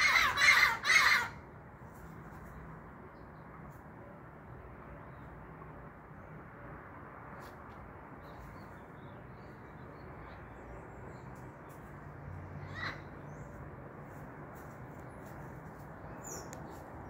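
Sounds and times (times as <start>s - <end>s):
parrot harsh call: 0.0s - 1.4s, 12.6s - 13.1s
steady background noise: 0.0s - 17.0s.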